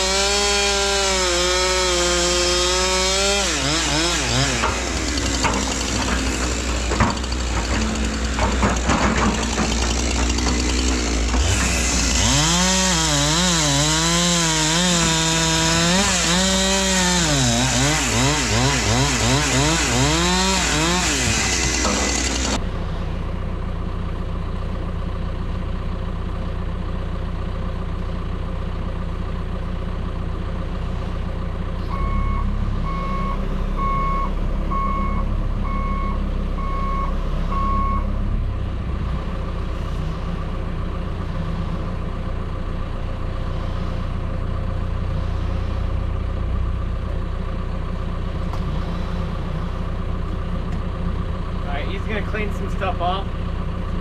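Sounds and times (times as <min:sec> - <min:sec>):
chainsaw cutting: 0:00.0 - 0:22.6, 0:48.4 - 0:50.1, 0:51.7 - 0:53.2
heavy engine running: 0:00.0 - 0:54.0
reversing alarm beeps: 0:31.9 - 0:38.1.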